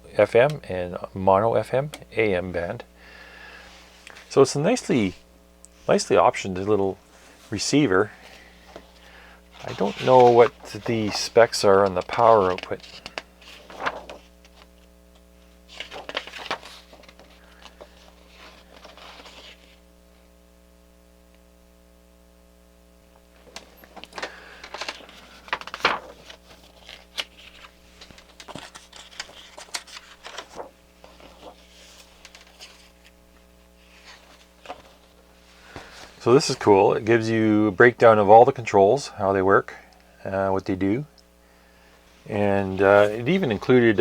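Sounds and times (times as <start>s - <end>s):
paper pages rustling: 8.0s - 19.8s, 23.4s - 36.7s, 42.2s - 44.0s.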